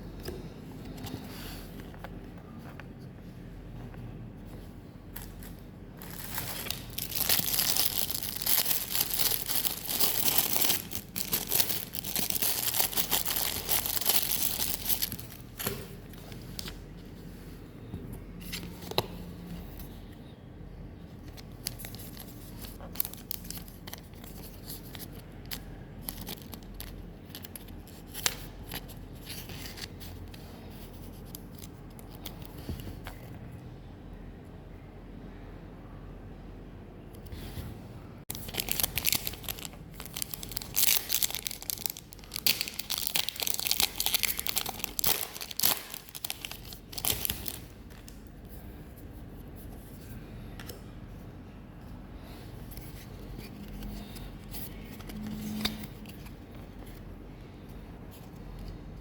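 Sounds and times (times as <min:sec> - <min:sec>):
foil wrapper tearing and crinkling: 0:06.0 - 0:15.4, 0:38.3 - 0:48.2.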